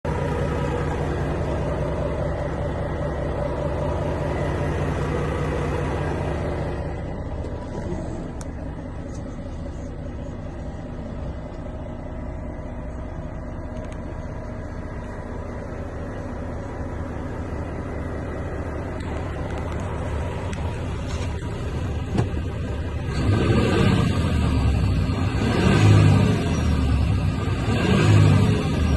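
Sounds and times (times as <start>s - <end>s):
diesel truck engine idling: 0.0s - 28.9s.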